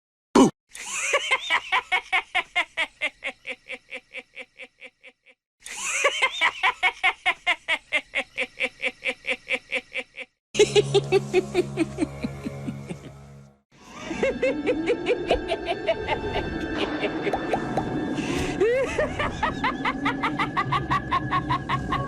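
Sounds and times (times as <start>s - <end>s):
high cackling evil laugh: 0.8s - 13.2s, 13.8s - 22.0s
low steady music: 10.6s - 21.9s.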